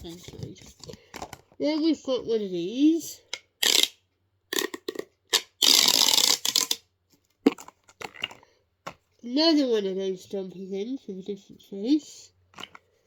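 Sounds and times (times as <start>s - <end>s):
plastic toys rustling and clicking: 0.0s - 1.9s, 3.6s - 9.2s, 12.5s - 13.0s.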